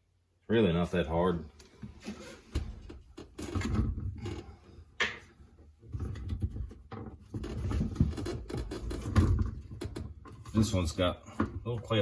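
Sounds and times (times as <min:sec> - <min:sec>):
knocks scrapes and rattles: 0:05.8 - 0:12.0.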